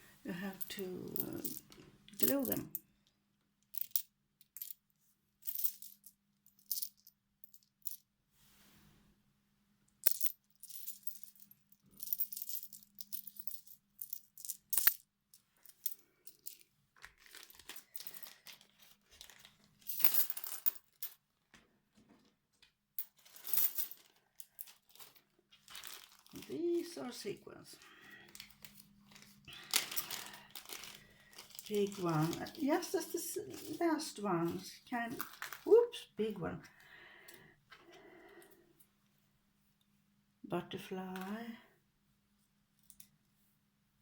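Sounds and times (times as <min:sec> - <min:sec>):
small pieces rattling: 0:16.4 - 0:21.0, 0:23.2 - 0:26.5, 0:28.3 - 0:32.9, 0:35.1 - 0:35.7
plastic bags rustling: 0:17.0 - 0:21.0, 0:23.1 - 0:36.0.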